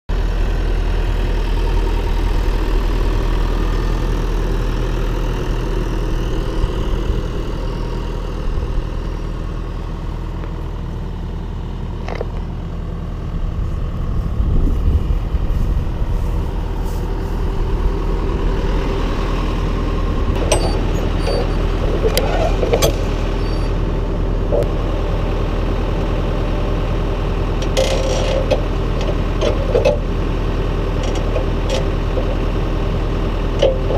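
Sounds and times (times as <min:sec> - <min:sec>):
tractor diesel engine running: 0:00.1 - 0:33.9
sharp metallic clicks and clanks: 0:27.6 - 0:30.0.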